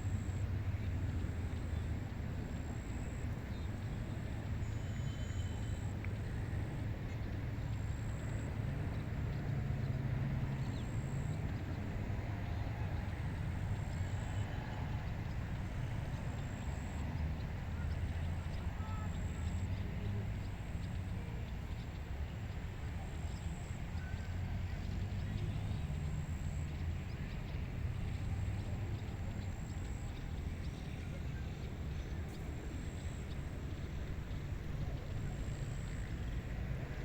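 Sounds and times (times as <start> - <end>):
faint high chirps: 4.6 - 5.9.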